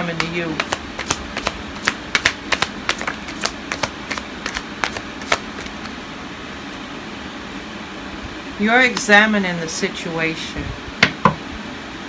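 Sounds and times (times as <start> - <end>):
cards clicking and tapping: 0.0 - 6.0.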